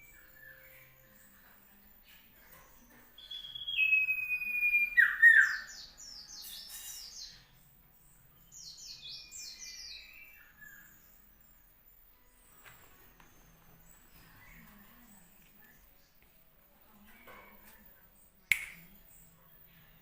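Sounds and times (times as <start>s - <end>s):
bird singing whistled notes: 0.0s - 1.3s, 3.2s - 7.5s, 8.4s - 11.2s.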